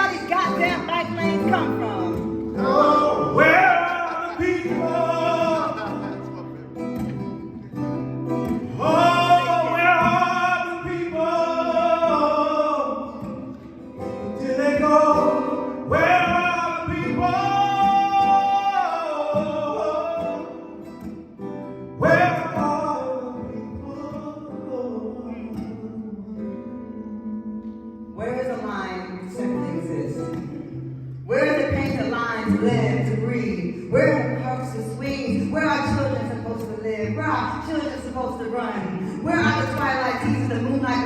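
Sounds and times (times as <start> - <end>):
person singing: 0.0 - 7.1, 8.7 - 13.2, 14.4 - 20.7
guitar accompaniment: 0.0 - 41.0.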